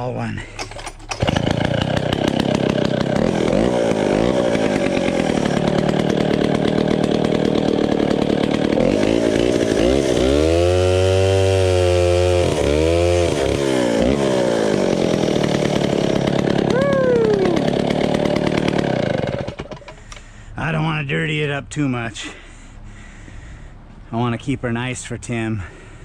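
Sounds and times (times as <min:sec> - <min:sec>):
chainsaw cutting wood: 0:00.6 - 0:20.3.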